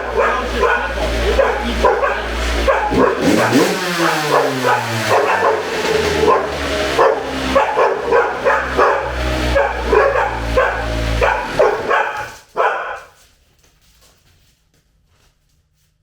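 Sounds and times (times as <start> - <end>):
steady low hum: 0.0 - 3.5
dogs barking: 0.0 - 13.2.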